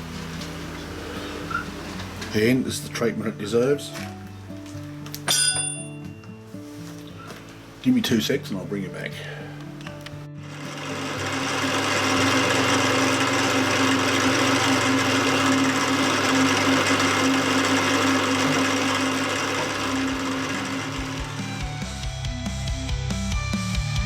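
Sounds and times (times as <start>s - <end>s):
milling machine running: 0.0s - 2.5s, 10.4s - 22.1s.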